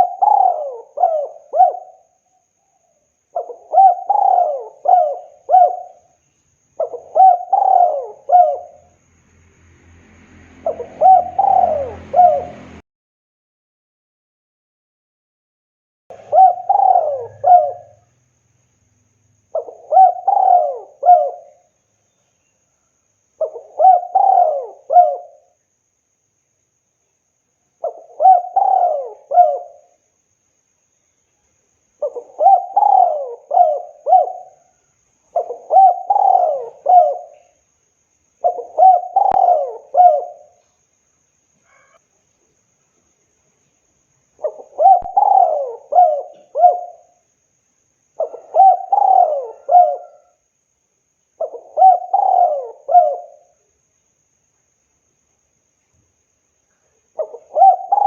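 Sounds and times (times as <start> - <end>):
dove cooing: 0.0 - 2.1, 3.3 - 6.2, 6.8 - 8.9, 10.6 - 12.8, 16.1 - 18.1, 19.5 - 21.7, 23.4 - 25.6, 27.8 - 30.0, 32.0 - 37.6, 38.4 - 40.6, 44.4 - 47.2, 48.2 - 50.4, 51.4 - 53.6, 57.1 - 58.0.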